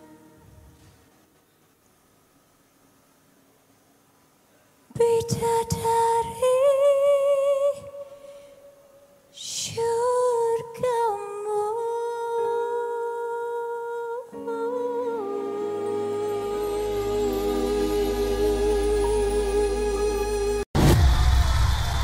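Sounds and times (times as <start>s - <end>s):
instrumental accompaniment: 14.4s - 20.7s.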